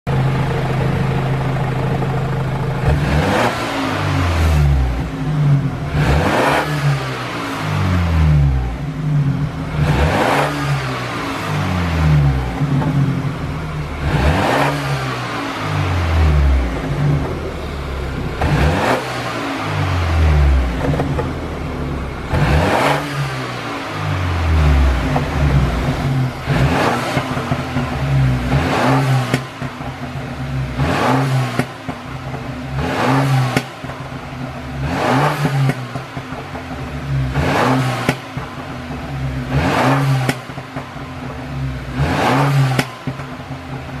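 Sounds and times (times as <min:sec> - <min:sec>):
car engine revving: 0:00.1 - 0:44.0
exhaust crackles and pops: 0:16.5 - 0:19.4, 0:20.4 - 0:23.2, 0:24.7 - 0:39.0.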